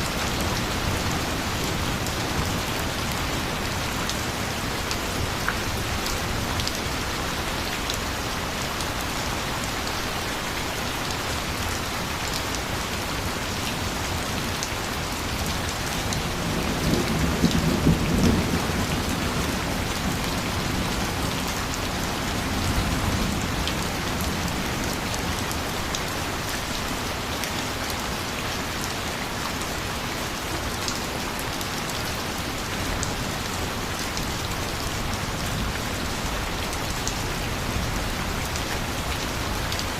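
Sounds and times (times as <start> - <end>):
steady rain hissing: 0.0 - 39.9
thunder rumbling: 16.5 - 21.3.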